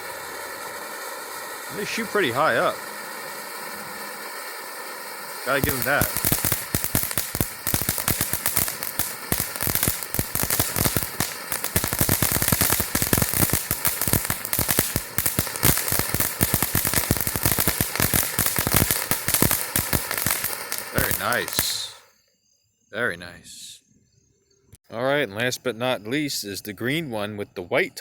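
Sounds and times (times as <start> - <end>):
firework fountain crackling: 0.0 - 22.0.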